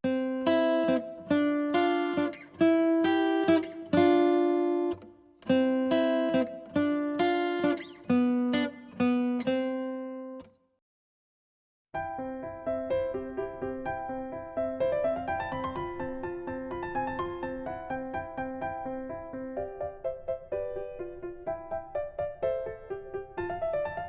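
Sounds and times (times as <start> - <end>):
plucked acoustic guitar tune: 0.0 - 10.5.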